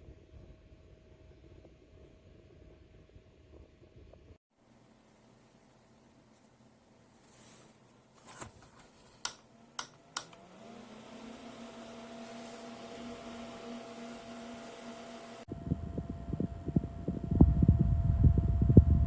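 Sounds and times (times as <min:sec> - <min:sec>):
fan motor humming: 0:08.3 - 0:19.0.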